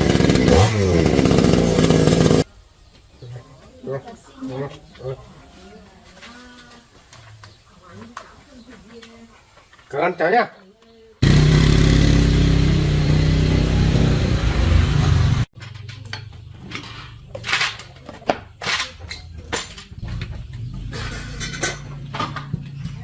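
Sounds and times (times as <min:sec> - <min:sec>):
small petrol engine running: 0:00.0 - 0:02.4, 0:11.2 - 0:15.5
clinks and knocks: 0:15.6 - 0:23.0.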